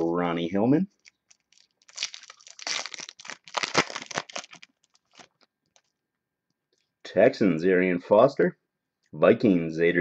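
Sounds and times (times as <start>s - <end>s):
foil wrapper tearing and crinkling: 1.0s - 5.9s.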